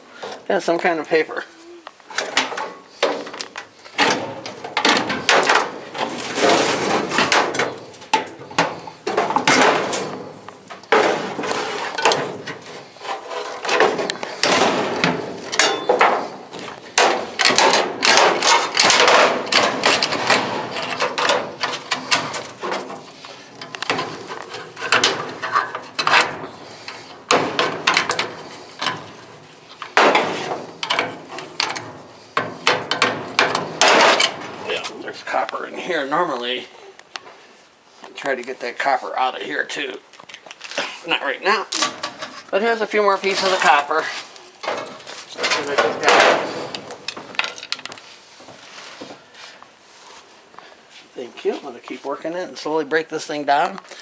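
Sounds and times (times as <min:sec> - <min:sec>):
metal clanks and knocks: 0:04.0 - 0:34.9, 0:44.6 - 0:48.0.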